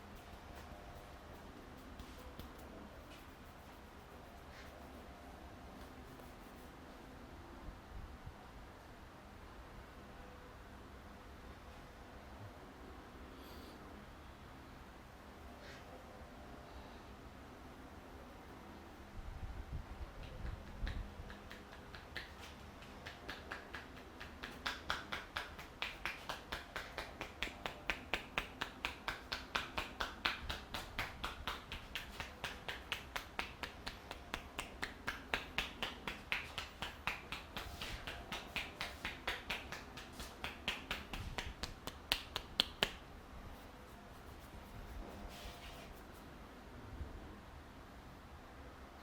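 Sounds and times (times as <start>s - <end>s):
hands slapping head and back: 1.8s - 5.0s, 20.2s - 43.0s.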